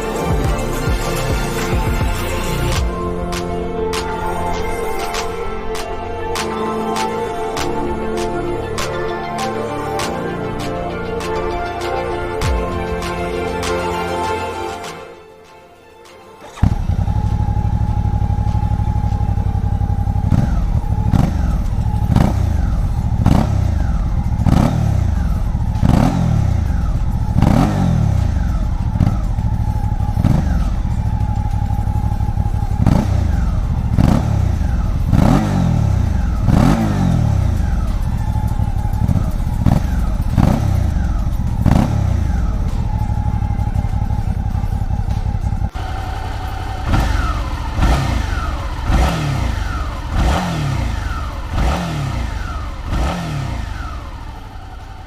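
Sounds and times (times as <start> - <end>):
throttle revs: 0.0 - 15.4, 16.4 - 55.0
motorcycle engine idling: 16.6 - 55.0.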